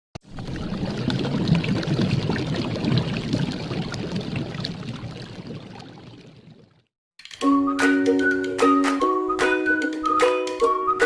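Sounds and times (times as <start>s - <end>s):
liquid pouring and splashing: 0.2s - 6.9s
small bubbling clicks: 0.2s - 6.9s.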